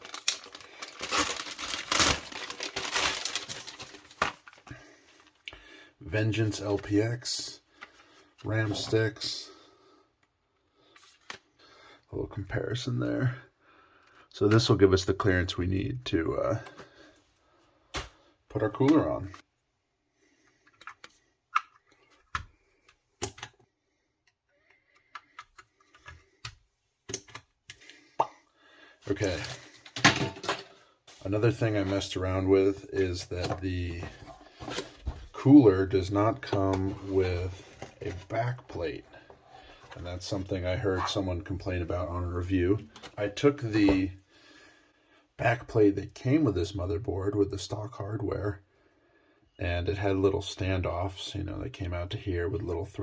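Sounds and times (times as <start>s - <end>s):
packaging crinkling: 0.0s - 5.4s.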